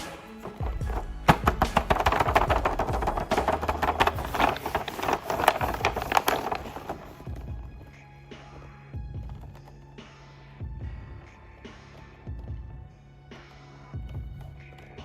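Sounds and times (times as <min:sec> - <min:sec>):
faint background music: 0:00.0 - 0:15.0
plastic packaging crinkling: 0:00.4 - 0:07.3.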